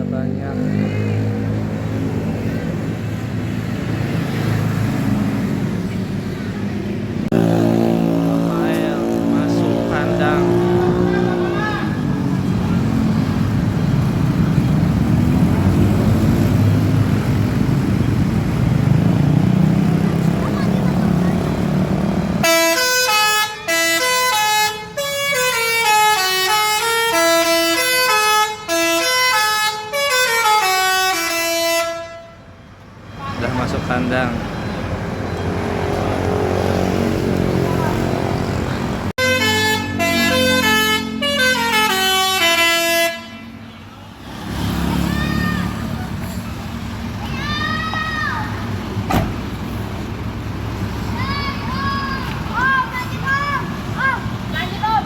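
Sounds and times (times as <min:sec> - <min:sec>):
bus diesel engine running: 0:08.5 - 0:36.6, 0:37.3 - 0:44.1, 0:44.9 - 0:55.0
musical bus horn playing tune: 0:22.4 - 0:32.5, 0:39.2 - 0:43.7.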